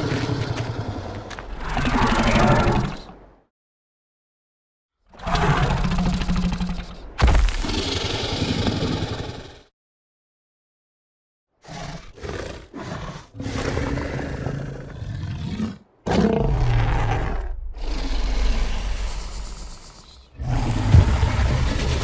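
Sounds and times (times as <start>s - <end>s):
creature growling and roaring: 0.0s - 3.2s, 5.1s - 9.6s, 11.6s - 22.0s.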